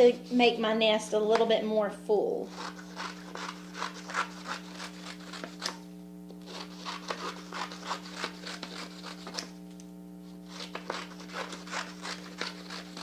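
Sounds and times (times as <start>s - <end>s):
scissors cutting paper: 2.5s - 5.8s, 6.4s - 9.5s, 10.4s - 13.0s.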